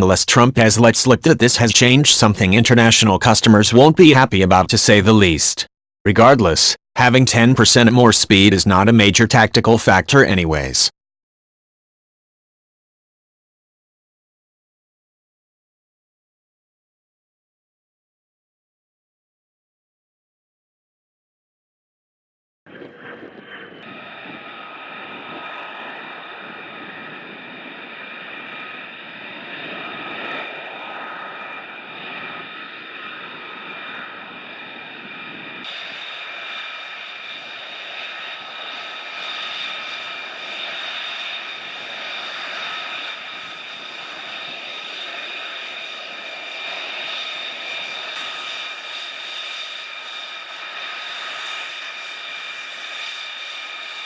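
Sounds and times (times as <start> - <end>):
jet engine whining: 0.0 - 10.8, 22.7 - 54.0.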